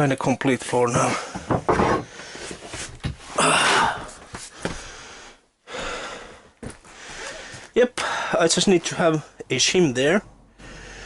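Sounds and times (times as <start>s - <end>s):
man breathing hard: 3.3s - 8.4s, 10.5s - 11.0s.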